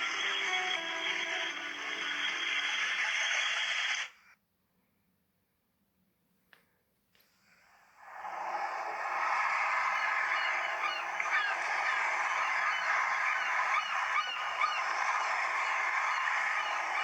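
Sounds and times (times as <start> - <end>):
flock of birds calling: 8.1 - 17.0.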